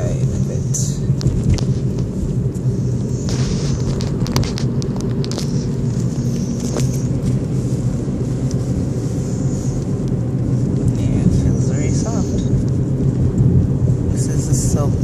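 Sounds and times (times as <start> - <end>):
car engine rumble in cabin: 0.0 - 15.0
light clicks and rustles: 1.1 - 7.5.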